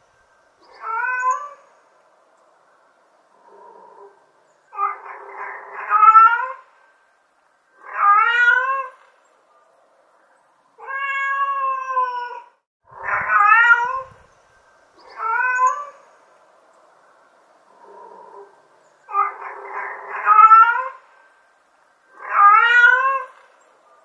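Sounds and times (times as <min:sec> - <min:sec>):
cat meowing: 0:04.8 - 0:06.6, 0:07.8 - 0:09.0, 0:10.8 - 0:14.2, 0:15.1 - 0:16.0, 0:19.1 - 0:21.0, 0:22.2 - 0:23.4.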